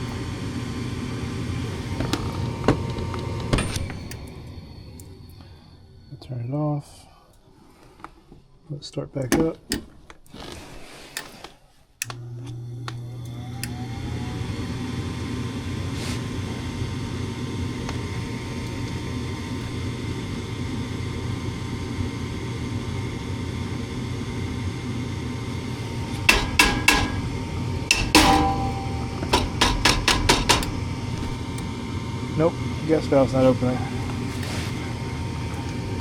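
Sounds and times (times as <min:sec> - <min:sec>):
furnace inducer motor humming: 0:00.0 - 0:09.5, 0:10.6 - 0:36.0
sharp clicks and knocks: 0:26.2 - 0:27.3, 0:27.9 - 0:30.8.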